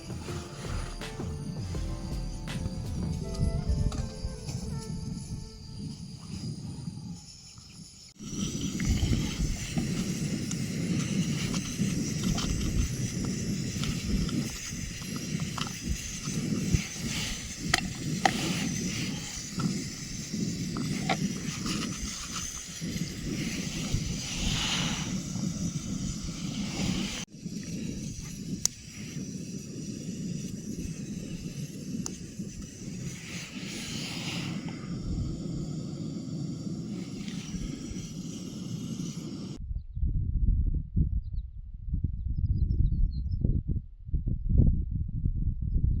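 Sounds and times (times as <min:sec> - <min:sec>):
background music: 0:00.0 - 0:05.7
wind rumble on microphone: 0:00.0 - 0:46.0.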